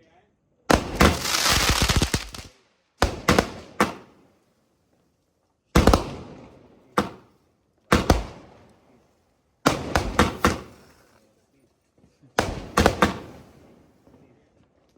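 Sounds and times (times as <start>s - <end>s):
firework bangs: 0.7s - 4.2s, 5.8s - 7.3s, 7.9s - 8.6s, 9.7s - 11.0s, 12.4s - 14.2s.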